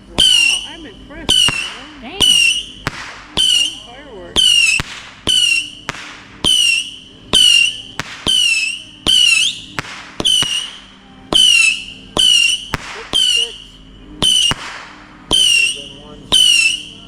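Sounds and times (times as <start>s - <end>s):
whistling firework shots: 0.0s - 17.0s.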